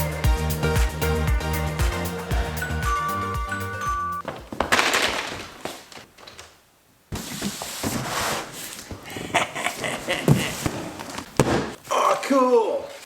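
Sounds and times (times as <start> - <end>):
rustling and clattering objects: 4.2 - 11.8.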